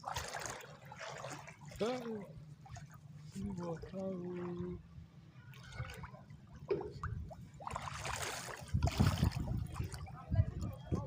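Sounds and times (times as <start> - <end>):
water splashing: 0.0 - 4.8, 5.5 - 10.7
water trickling and sloshing: 0.0 - 11.0.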